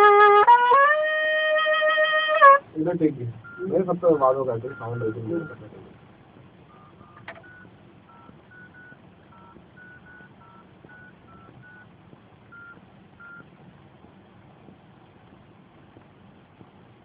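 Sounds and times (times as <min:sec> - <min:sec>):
electronic keypad beeps: 0:03.4 - 0:05.6, 0:06.7 - 0:11.9, 0:12.5 - 0:13.4.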